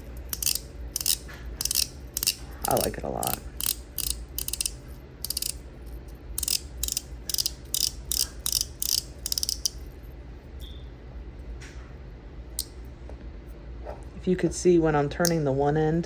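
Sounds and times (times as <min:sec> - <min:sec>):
fidget toy ratchet clicking: 0:00.0 - 0:09.9.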